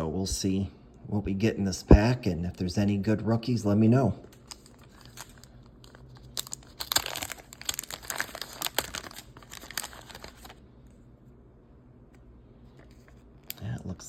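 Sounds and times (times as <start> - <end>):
paper wrapper tearing and crinkling: 4.2 - 10.6.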